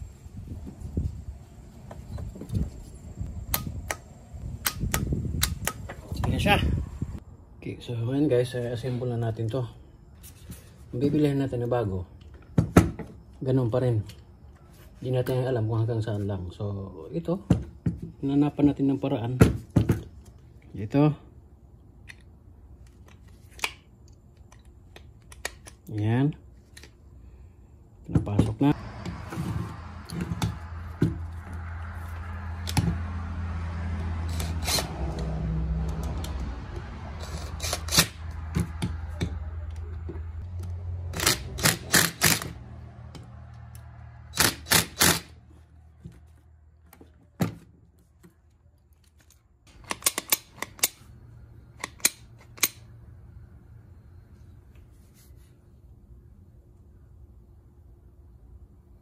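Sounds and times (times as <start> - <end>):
metallic clicks of hand tools: 49.7 - 51.0, 51.8 - 52.9.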